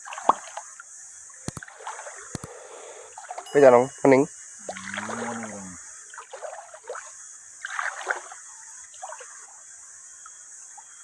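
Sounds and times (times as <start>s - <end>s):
river water splashing: 0.0s - 0.8s, 1.4s - 3.9s, 4.6s - 9.3s
steady high hiss: 0.6s - 6.2s.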